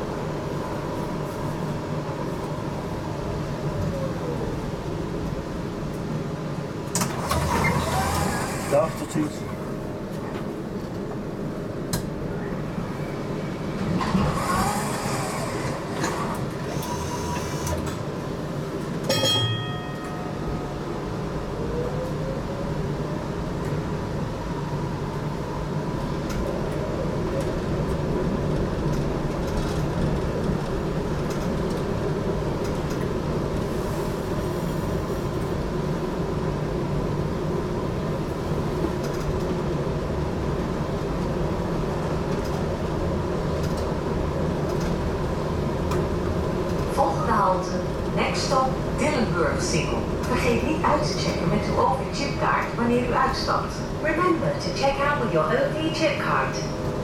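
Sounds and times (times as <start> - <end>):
tram wheels rumbling on rails: 0.0 - 57.0
short ringing signal: 19.1 - 20.6.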